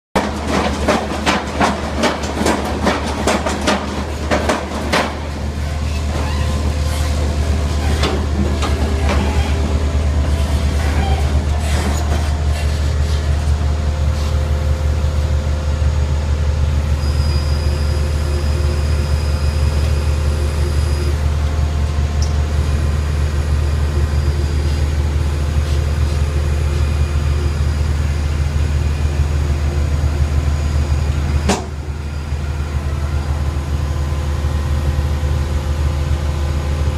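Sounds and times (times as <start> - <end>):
metallic clanks and knocks: 0.2 - 5.4
low engine drone: 3.1 - 36.9.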